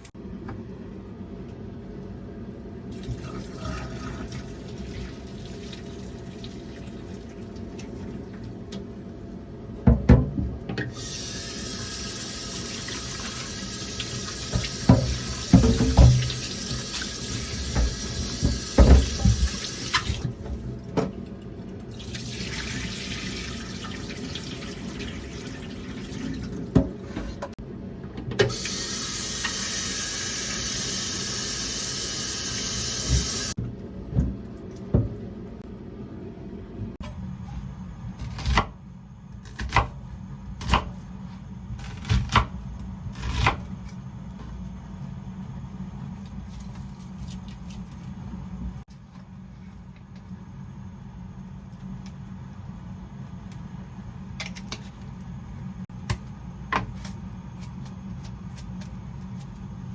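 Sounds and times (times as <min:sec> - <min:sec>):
tap running into a sink: 0:14.5 - 0:20.3
knocks and clatter of dishes: 0:14.9 - 0:16.3.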